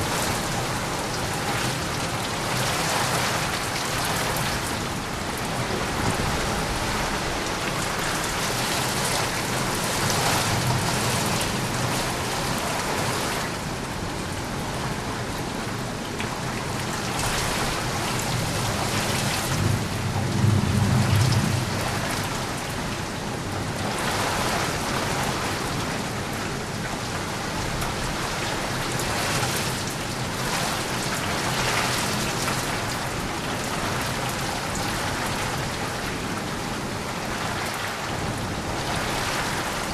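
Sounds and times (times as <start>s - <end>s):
heavy rain: 0.0s - 39.9s
thunder rumbling: 19.6s - 22.6s.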